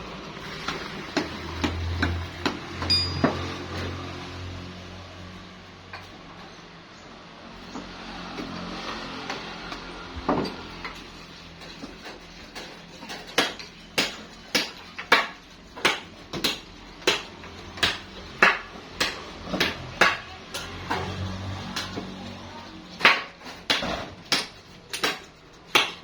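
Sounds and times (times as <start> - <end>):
hammer striking metal: 2.4 - 3.7.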